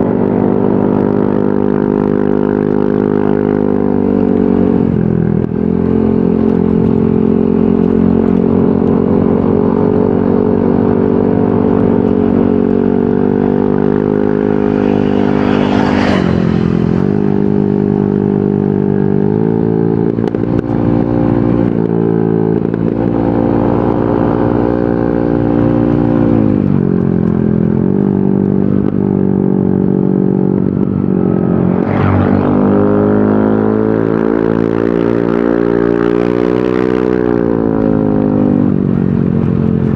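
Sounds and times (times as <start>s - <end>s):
scooter engine running: 0.0s - 39.9s
short rushing noise: 31.3s - 33.2s.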